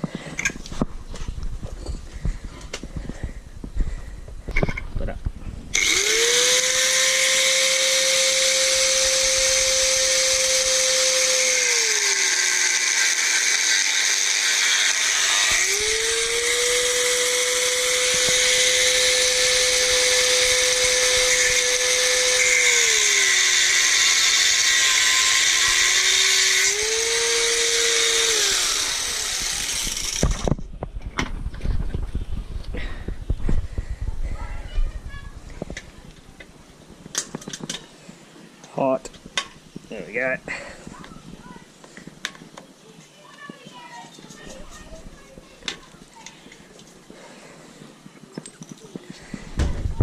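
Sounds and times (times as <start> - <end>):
small power tool whining: 5.7 - 30.6.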